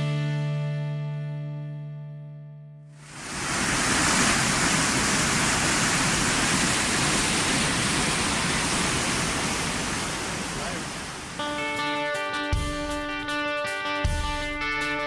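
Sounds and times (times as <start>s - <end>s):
waterfall roar: 3.0s - 11.6s.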